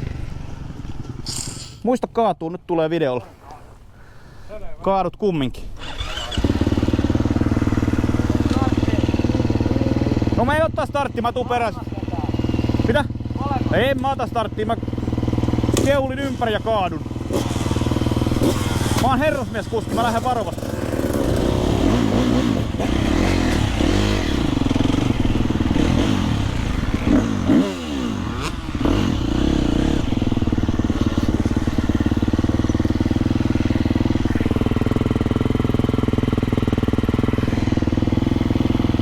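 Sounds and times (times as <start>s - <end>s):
motocross bike engines revving: 0.0s - 1.8s, 5.8s - 39.0s
engine idling: 23.2s - 39.0s.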